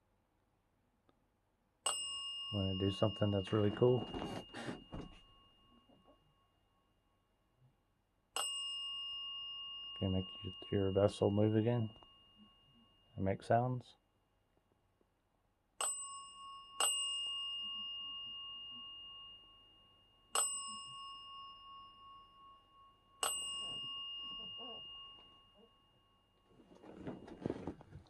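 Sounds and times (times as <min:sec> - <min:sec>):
bell ringing: 0:01.9 - 0:06.3, 0:15.8 - 0:27.7.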